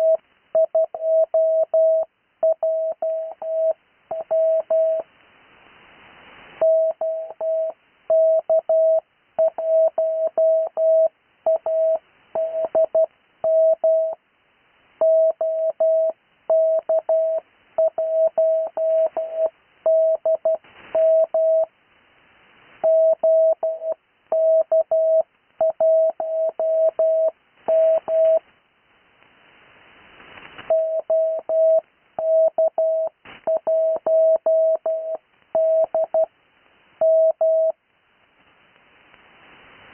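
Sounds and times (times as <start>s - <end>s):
morse code tone: 22.8s - 28.4s.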